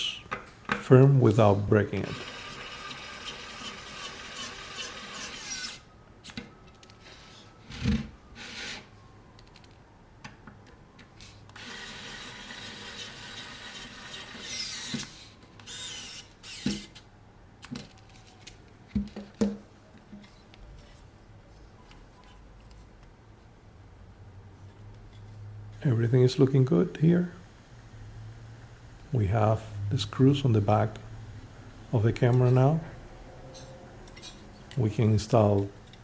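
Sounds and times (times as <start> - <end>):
electric screwdriver running: 2.0 - 5.8, 11.6 - 16.8.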